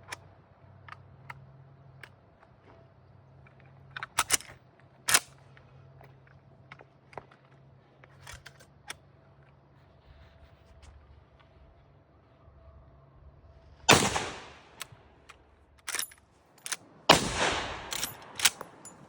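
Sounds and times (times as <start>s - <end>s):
rifle action metallic clicks: 4.0s - 5.4s, 13.9s - 19.0s.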